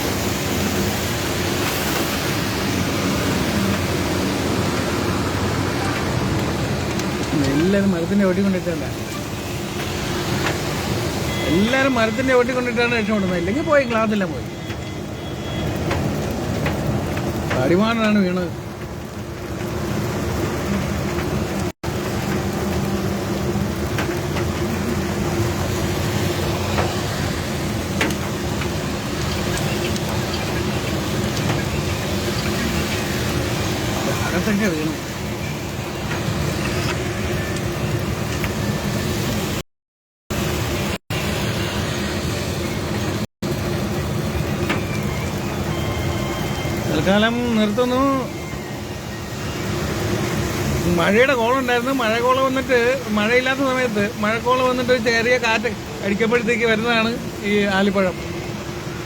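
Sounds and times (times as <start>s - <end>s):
hail and rain falling: 0.0s - 39.6s, 40.3s - 59.0s.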